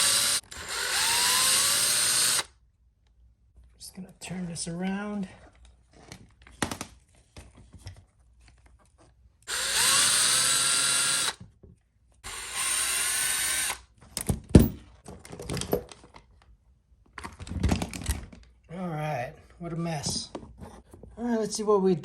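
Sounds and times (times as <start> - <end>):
power driver motor whirring: 0.0 - 2.5, 9.5 - 11.4, 12.3 - 13.8.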